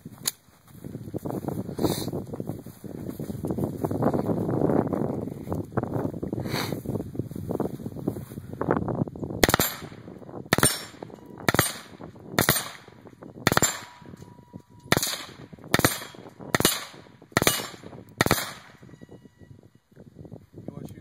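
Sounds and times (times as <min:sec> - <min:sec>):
suppressed rifle shots: 0:09.4 - 0:14.1, 0:14.9 - 0:18.9.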